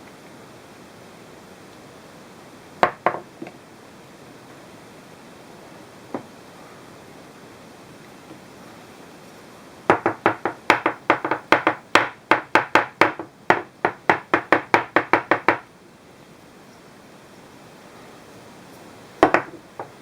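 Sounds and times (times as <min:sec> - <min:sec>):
sharp knocks on hard surface: 0:02.8 - 0:03.2, 0:09.9 - 0:15.7, 0:19.2 - 0:19.9.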